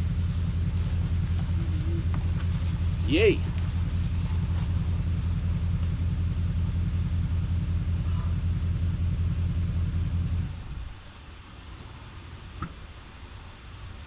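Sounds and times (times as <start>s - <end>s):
truck engine idling: 0.0s - 11.0s.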